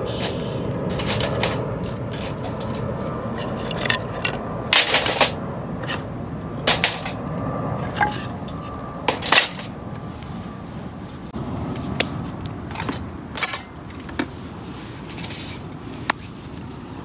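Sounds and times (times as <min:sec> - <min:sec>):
metal striker scraping fire starter rod: 0:12.8 - 0:13.7.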